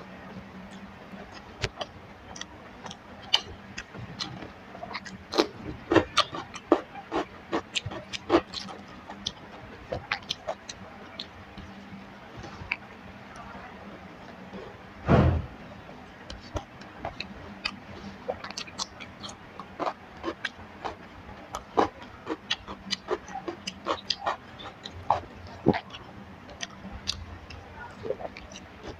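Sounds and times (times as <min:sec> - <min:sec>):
person chewing food: 0:01.3 - 0:11.3, 0:17.6 - 0:28.9
dull thump: 0:15.0 - 0:15.6.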